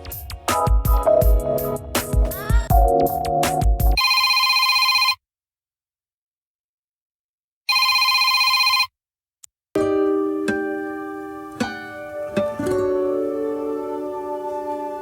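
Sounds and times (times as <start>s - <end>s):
plucked guitar-like notes: 9.8s - 15.0s.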